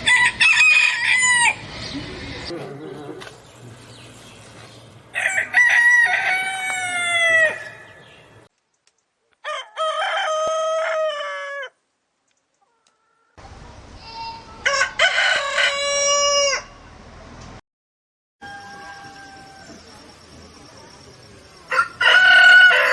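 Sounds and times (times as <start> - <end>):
rooster crowing: 0.0 - 1.7, 5.1 - 7.9, 9.4 - 11.8, 14.6 - 16.9, 18.4 - 20.0, 21.7 - 22.9.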